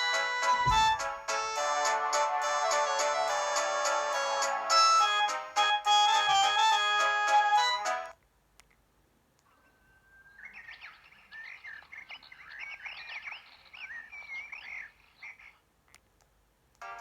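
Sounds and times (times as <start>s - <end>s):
chirping ringtone calls: 9.5s - 15.6s.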